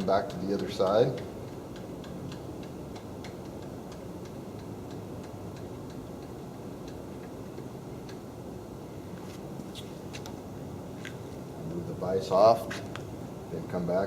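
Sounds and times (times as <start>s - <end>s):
light ticking clicks: 0.0s - 8.2s
steady low hum: 0.0s - 14.0s.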